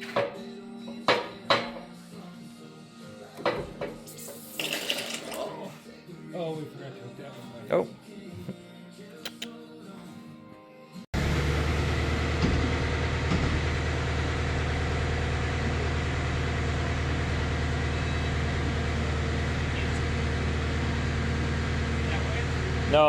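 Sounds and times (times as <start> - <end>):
faint background music: 0.0 - 11.1
diesel engine idling: 11.2 - 23.0.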